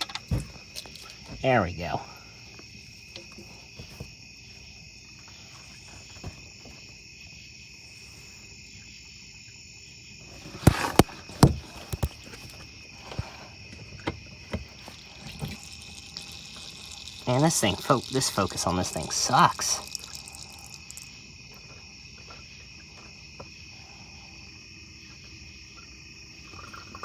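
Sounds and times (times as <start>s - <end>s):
insects trilling: 0.0s - 27.0s
sharp knocks and clatters: 10.5s - 12.6s.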